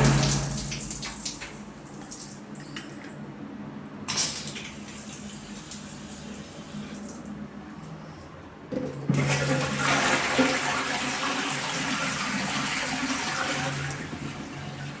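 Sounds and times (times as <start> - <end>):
low hum: 0.0 - 1.9
tap water running: 0.0 - 2.9, 4.1 - 7.3, 9.1 - 15.0.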